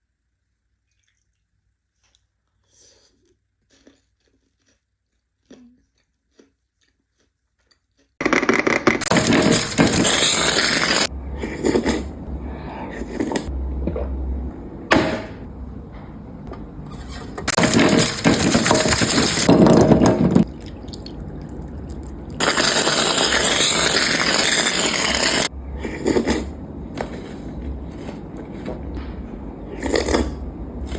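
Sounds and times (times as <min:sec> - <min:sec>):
crunching and chewing chocolates: 0:00.8 - 0:12.0, 0:20.4 - 0:28.8.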